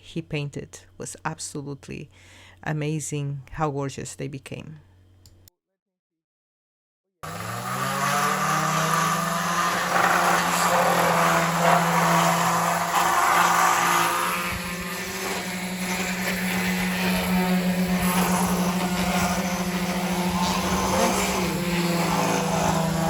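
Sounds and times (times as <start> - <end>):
machine motor humming: 7.2 - 23.0.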